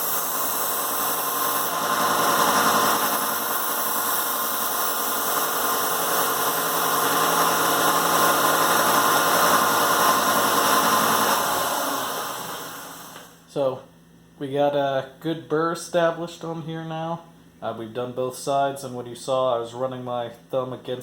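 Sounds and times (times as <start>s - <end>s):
belt sander motor whine: 0.0s - 13.3s.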